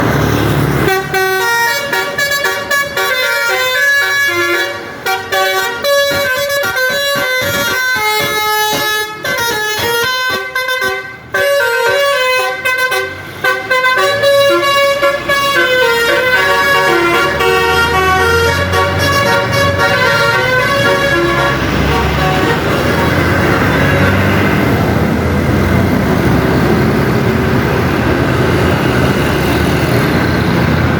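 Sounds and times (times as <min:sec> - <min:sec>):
low bus engine rumble: 0:00.0 - 0:30.9
multi-tone musical horn: 0:00.8 - 0:24.6.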